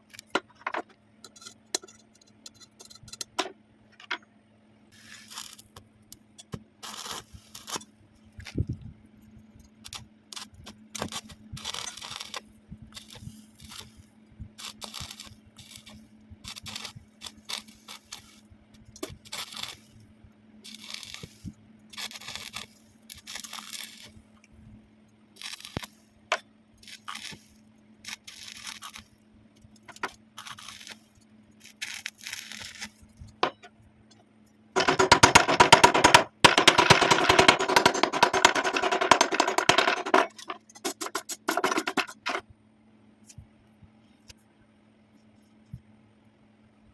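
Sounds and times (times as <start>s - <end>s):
faint steady hum: 0.0s - 46.9s
welding arc crackling: 5.0s - 5.8s, 6.5s - 8.6s, 9.8s - 14.0s, 14.6s - 19.9s, 20.6s - 24.2s, 25.4s - 29.1s, 29.7s - 33.7s, 34.8s - 42.4s
scraping on metal: 34.8s - 42.4s.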